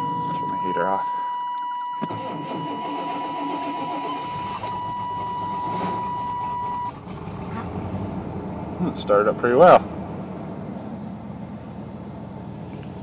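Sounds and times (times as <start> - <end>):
pickup truck engine starting: 2.0 - 13.0.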